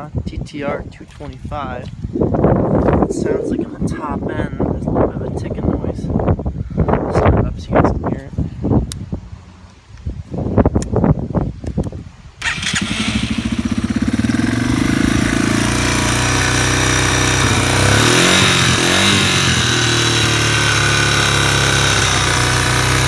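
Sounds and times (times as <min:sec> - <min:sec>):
motorcycle engine starting and idling: 0:12.4 - 0:23.0.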